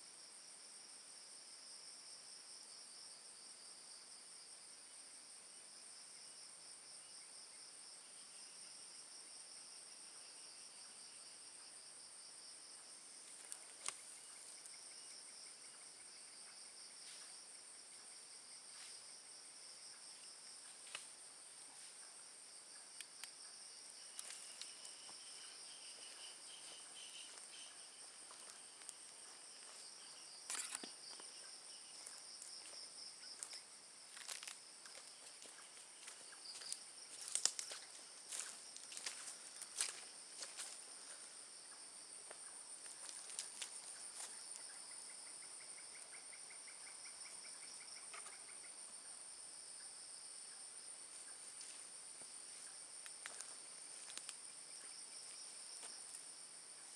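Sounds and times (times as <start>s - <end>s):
lower insect trill: 0.0s - 56.9s
high-pitched insect trills: 5.9s - 56.9s.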